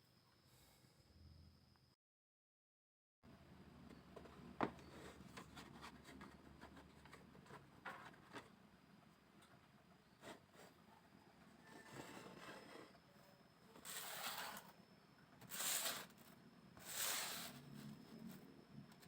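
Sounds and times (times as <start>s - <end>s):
bamboo scraped by hand: 13.8s - 14.7s, 15.4s - 16.2s, 16.8s - 17.7s.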